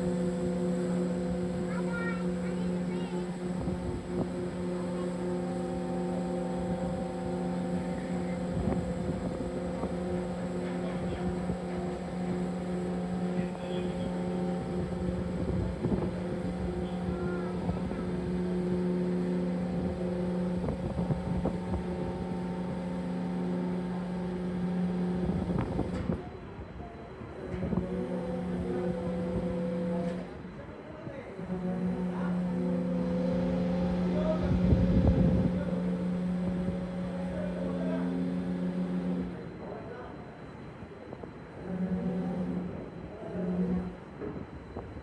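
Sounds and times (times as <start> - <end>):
machinery drone: 0.0 - 26.4, 27.2 - 30.6, 31.3 - 45.0.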